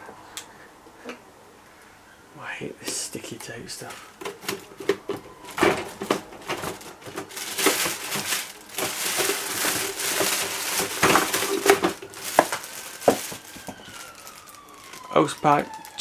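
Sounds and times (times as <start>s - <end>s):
packaging rustling: 3.8s - 16.0s
packing tape ripping: 4.3s - 16.0s.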